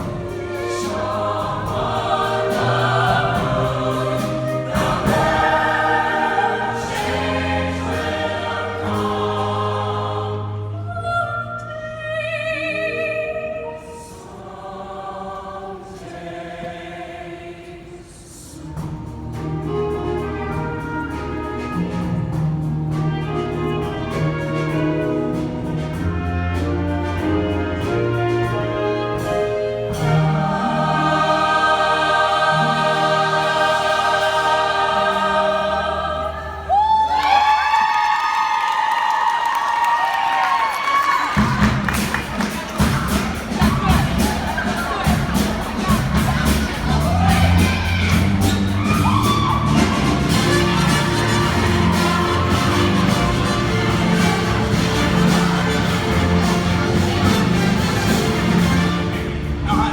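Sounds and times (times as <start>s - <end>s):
instrumental accompaniment: 0.0s - 10.9s, 18.6s - 36.8s, 41.4s - 59.9s
choir singing: 0.0s - 22.2s, 23.2s - 37.8s, 41.3s - 59.9s.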